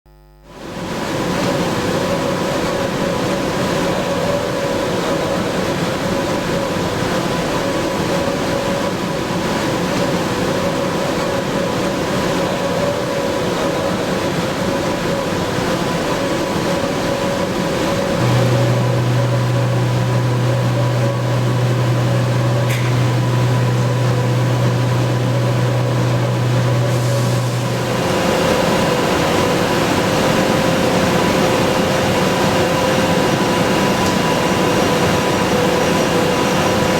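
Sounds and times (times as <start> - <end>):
strong low hum: 16.9 - 33.7.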